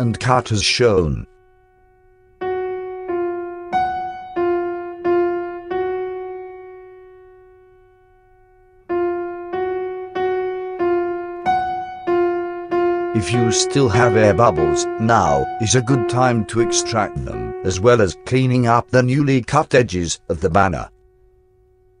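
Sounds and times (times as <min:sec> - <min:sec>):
piano-like keyboard music: 0:00.0 - 0:21.3.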